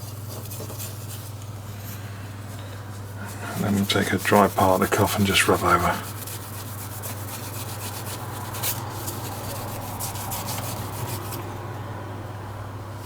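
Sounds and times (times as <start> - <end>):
cloth rubbing on plastic: 2.9 - 11.5.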